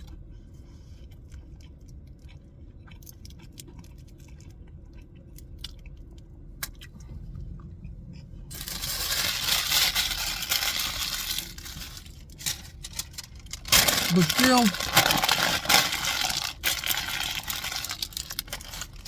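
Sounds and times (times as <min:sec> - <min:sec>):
person chewing crunchy food: 0:00.0 - 0:19.0
low hum: 0:03.4 - 0:19.0
loud rustling: 0:08.5 - 0:19.0.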